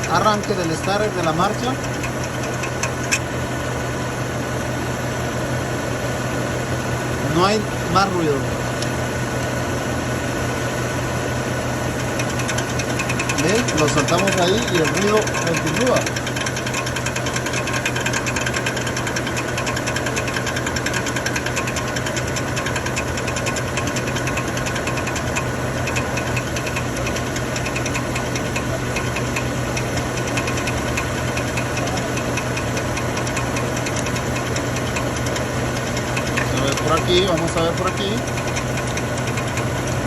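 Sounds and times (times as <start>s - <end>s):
fast knocking rattle: 0.0s - 3.4s, 12.0s - 40.0s
engine idling: 0.0s - 40.0s.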